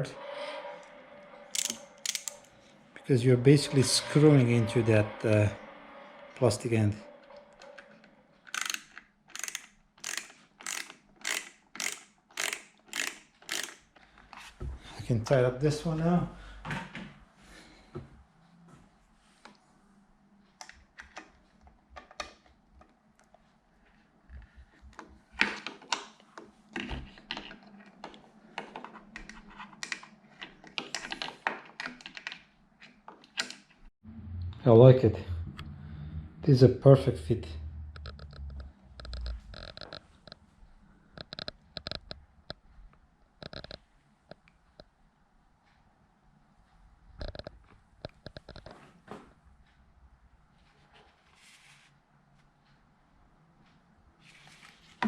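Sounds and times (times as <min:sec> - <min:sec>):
ratchet clicking: 0:01.5 - 0:02.5, 0:08.5 - 0:13.8.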